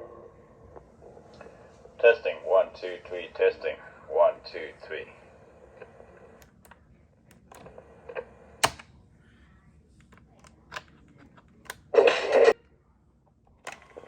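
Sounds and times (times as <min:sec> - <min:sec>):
cassette keys clicking: 0:06.4 - 0:07.7, 0:08.6 - 0:08.9, 0:10.0 - 0:12.0, 0:13.5 - 0:14.0.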